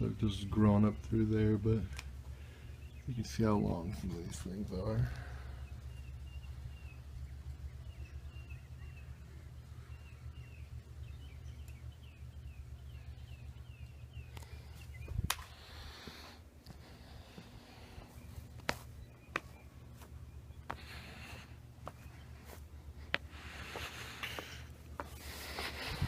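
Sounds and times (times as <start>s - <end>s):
steady low rumble: 0.0s - 26.0s
small bird chirping: 2.4s - 15.7s.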